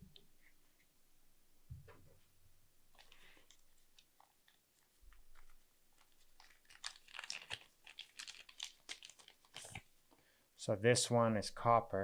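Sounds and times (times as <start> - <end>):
packaging crinkling: 2.9 - 9.9.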